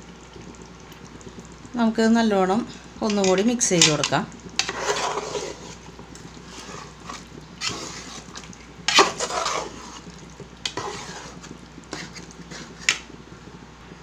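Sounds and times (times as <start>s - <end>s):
spoon scraping a cooking pan: 3.0s - 13.1s.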